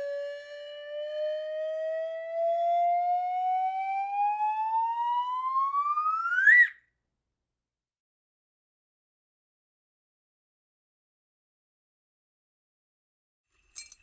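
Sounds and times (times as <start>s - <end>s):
cartoon rising whistle: 5.4s - 6.8s.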